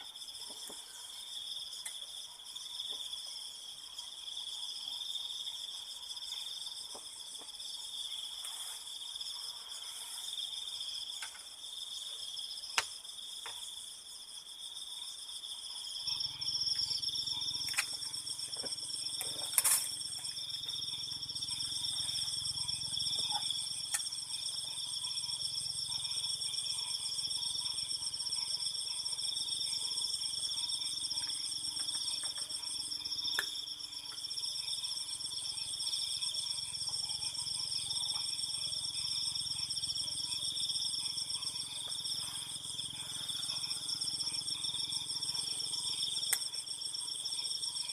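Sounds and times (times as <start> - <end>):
crickets trilling: 0.0 - 47.9.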